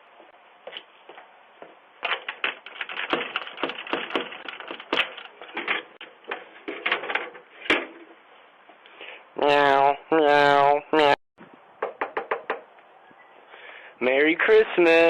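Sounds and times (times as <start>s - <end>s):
clatter of clicks and knocks: 2.0s - 8.0s.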